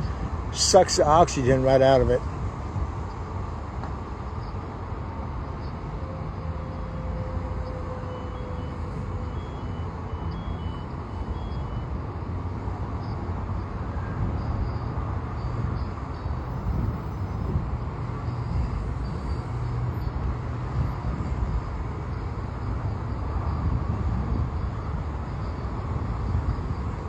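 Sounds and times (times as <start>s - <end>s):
fire truck engine rumbling: 0.0s - 12.9s.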